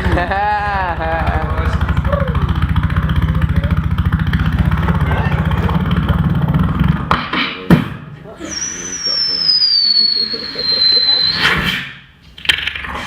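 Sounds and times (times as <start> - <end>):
beatboxer imitating idling engine: 0.0 - 6.6.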